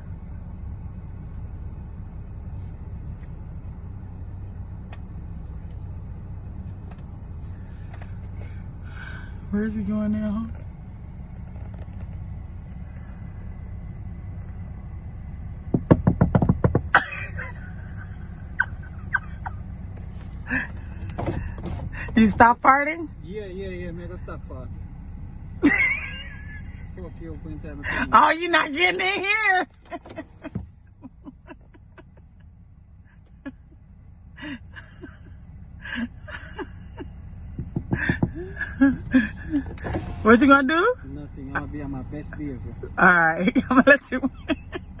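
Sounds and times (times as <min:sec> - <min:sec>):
car rumble: 0:00.0 - 0:45.0
taps on window: 0:15.7 - 0:17.0, 0:37.6 - 0:38.4
knocking on car window: 0:15.7 - 0:17.1, 0:37.5 - 0:38.5.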